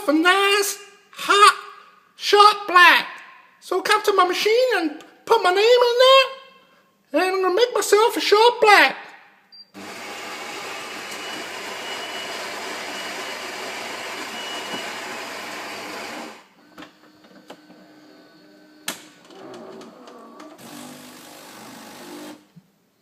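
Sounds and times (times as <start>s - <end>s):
coffee grinder grinding beans: 9.8s - 16.5s
machine humming: 9.8s - 22.5s.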